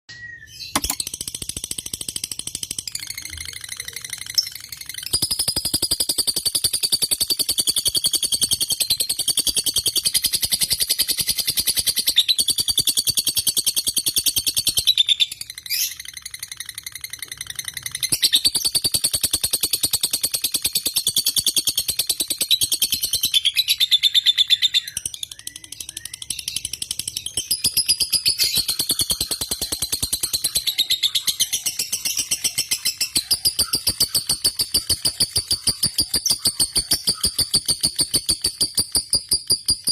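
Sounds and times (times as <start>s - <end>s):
lovebird trilling chatter: 0.7s - 19.8s, 27.4s - 39.9s.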